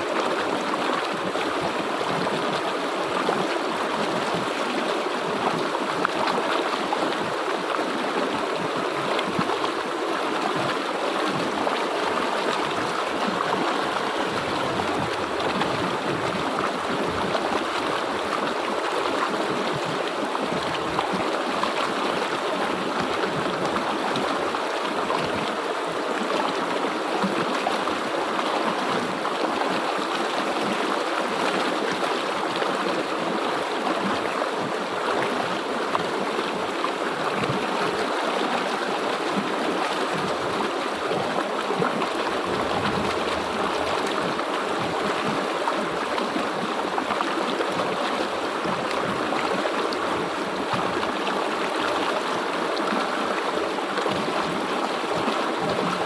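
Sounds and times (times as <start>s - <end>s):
stream flowing over rocks: 0.0s - 56.0s.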